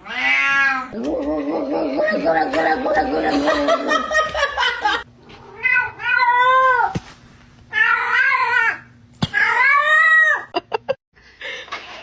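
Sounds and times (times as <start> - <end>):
cat meowing: 0.0 - 1.0.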